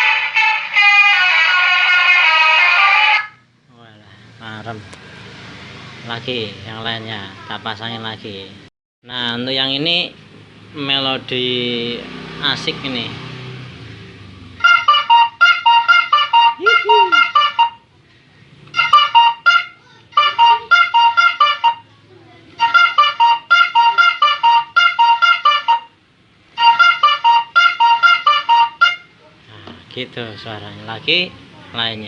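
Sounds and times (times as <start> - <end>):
electronic bus horn melody: 0.0 - 3.4, 14.6 - 17.9, 18.7 - 21.9, 22.6 - 29.2.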